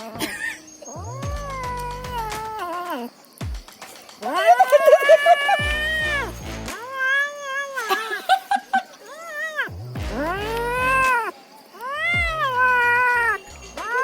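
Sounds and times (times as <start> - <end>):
cat meowing: 0.9 - 3.1, 4.2 - 8.2, 9.1 - 14.0.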